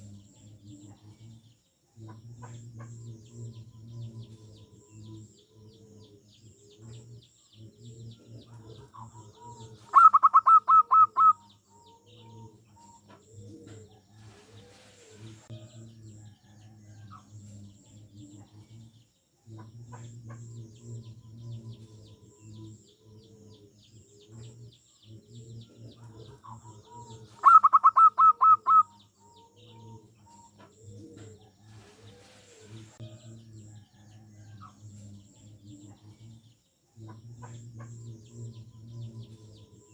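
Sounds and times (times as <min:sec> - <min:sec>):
faint high bird chirping: 0:02.4 - 0:36.5
dove staccato song: 0:08.8 - 0:11.6, 0:25.6 - 0:29.6
low bird calling: 0:09.8 - 0:11.5, 0:27.4 - 0:29.0.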